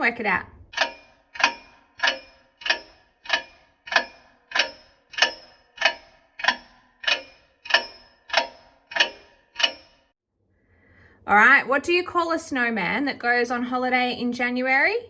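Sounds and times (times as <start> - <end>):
clock ticking: 0.0 - 10.1.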